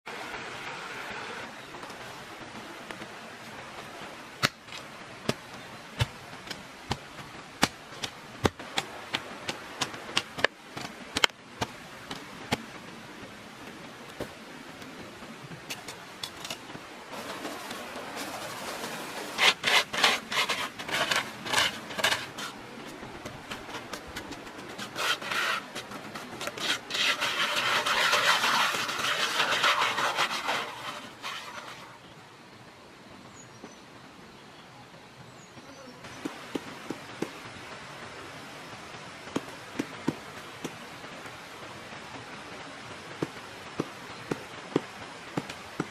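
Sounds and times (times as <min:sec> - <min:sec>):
steady scraping: 0:15.6 - 0:32.0
rasping strokes: 0:17.2 - 0:31.9.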